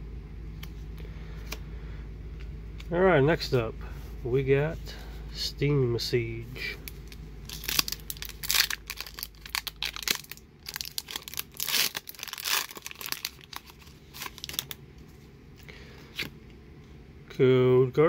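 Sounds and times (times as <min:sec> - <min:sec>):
foil pack tearing and crinkling: 0:07.0 - 0:14.8.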